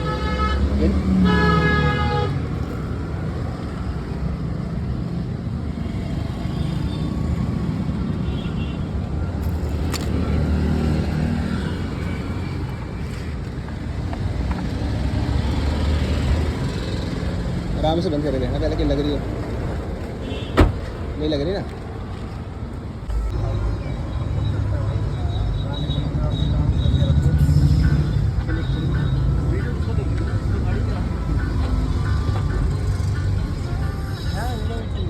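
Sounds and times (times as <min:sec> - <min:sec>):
vehicle horn: 0:00.0 - 0:02.4
road traffic rumble: 0:00.0 - 0:35.0.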